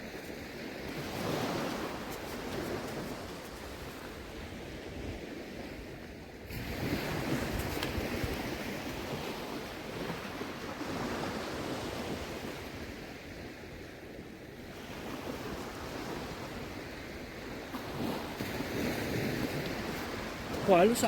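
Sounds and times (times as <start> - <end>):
wind rumbling on microphone: 0.0 - 21.0
seawater washing and sloshing: 0.8 - 4.2, 17.7 - 21.0.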